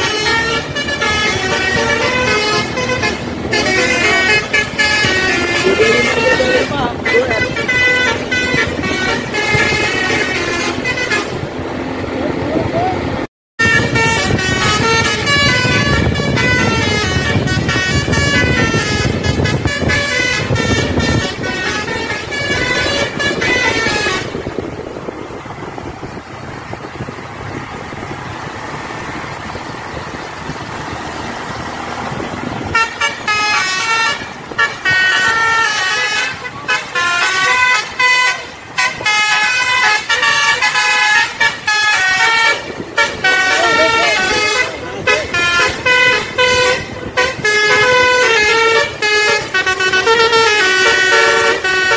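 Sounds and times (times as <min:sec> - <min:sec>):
bus engine: 0:00.0 - 0:51.9
bus horn playing melodies: 0:00.0 - 0:51.9
road noise: 0:00.0 - 0:51.9.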